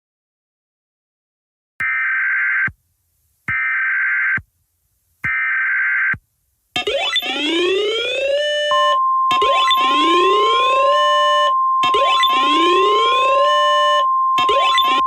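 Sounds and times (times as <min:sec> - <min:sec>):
rising electronic alert sweeps: 0:06.8 - 0:15.0
steady alarm tone: 0:06.8 - 0:15.0.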